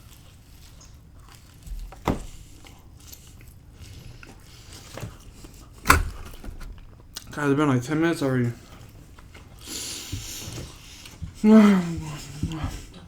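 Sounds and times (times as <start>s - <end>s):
person chewing: 0.0s - 7.3s.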